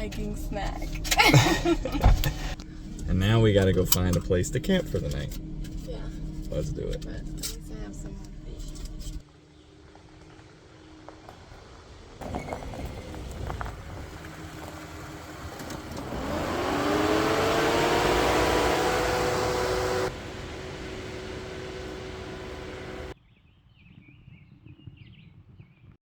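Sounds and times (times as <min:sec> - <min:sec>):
vehicle engine driving: 0:00.0 - 0:23.2
birds chirping: 0:12.2 - 0:23.2.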